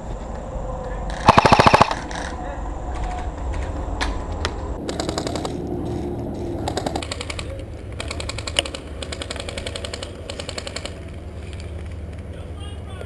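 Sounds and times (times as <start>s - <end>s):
sharp crack: 1.1s - 2.4s
airsoft guns firing full-auto: 1.2s - 2.3s, 4.8s - 6.0s, 6.6s - 12.1s.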